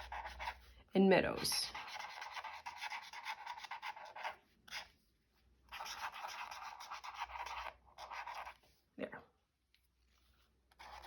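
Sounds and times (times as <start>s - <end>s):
pen scratching on paper: 0.0s - 0.7s, 1.4s - 4.9s, 5.7s - 8.6s, 10.7s - 11.0s.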